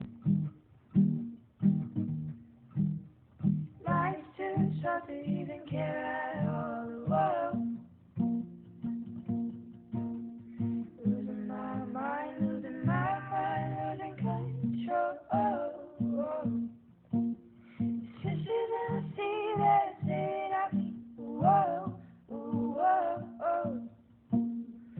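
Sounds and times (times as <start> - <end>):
guitar picking single notes: 0.0 - 24.9
person singing: 3.8 - 7.8, 10.7 - 16.8, 17.9 - 24.0.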